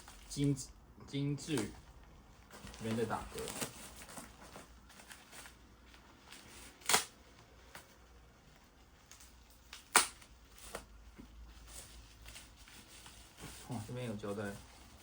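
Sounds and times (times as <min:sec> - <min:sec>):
packaging rustling: 0:01.5 - 0:10.9.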